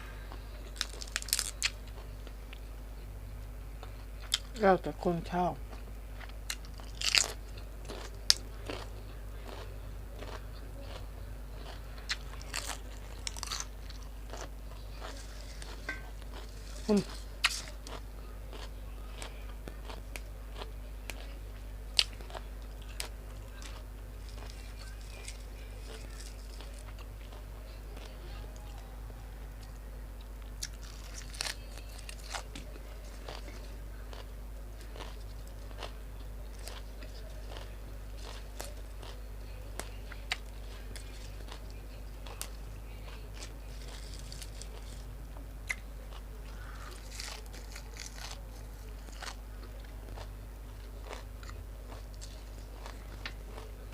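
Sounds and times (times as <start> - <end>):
person chewing food: 0.1 - 4.5, 5.6 - 53.9
crisp crunches: 0.8 - 2.0, 6.5 - 8.9, 11.6 - 20.2, 22.0 - 27.4, 30.5 - 35.9, 42.3 - 45.1, 46.5 - 50.3.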